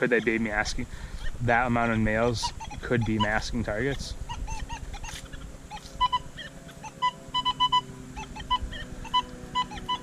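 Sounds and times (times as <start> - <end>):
metal detector beeps: 4.5 - 10.0.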